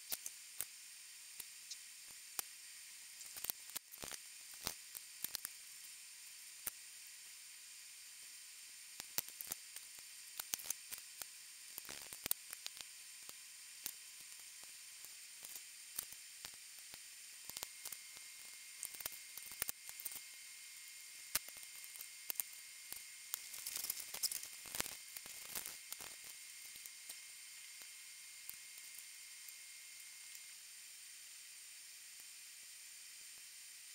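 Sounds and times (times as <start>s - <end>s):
small tools clicking and tapping: 0.0s - 0.7s, 3.2s - 5.6s, 9.0s - 20.2s, 21.3s - 27.2s
faint steady hiss: 0.0s - 33.9s.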